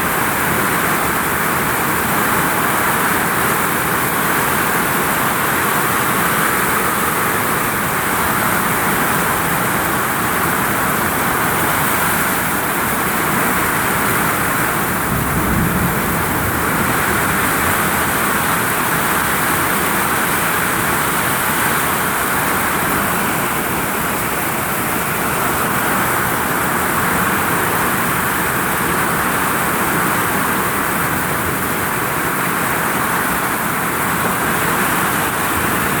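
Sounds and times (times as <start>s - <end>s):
heavy rain on a vinyl roof: 0.0s - 36.0s.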